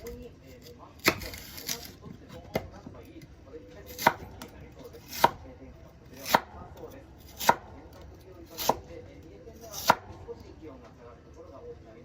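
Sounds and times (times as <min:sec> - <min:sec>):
knife cutting on cutting board: 0:00.0 - 0:02.6, 0:03.9 - 0:05.4, 0:07.2 - 0:08.8, 0:09.6 - 0:10.1.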